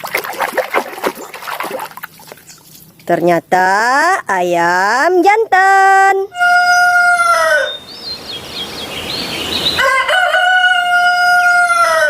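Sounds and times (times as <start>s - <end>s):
rooster crowing: 6.3s - 7.9s, 9.6s - 12.0s.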